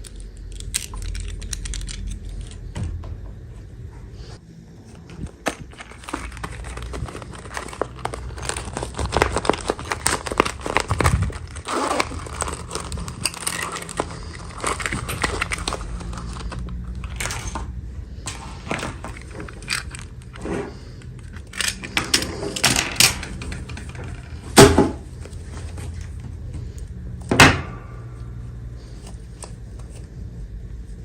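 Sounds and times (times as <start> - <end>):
steady low hum: 0.0 - 31.0
plastic packaging rustling and clicking: 5.0 - 17.6, 18.3 - 26.2.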